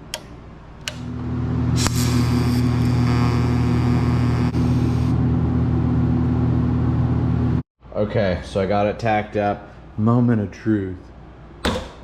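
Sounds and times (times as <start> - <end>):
welder humming: 0.8 - 7.6
welding arc hiss: 1.8 - 5.1.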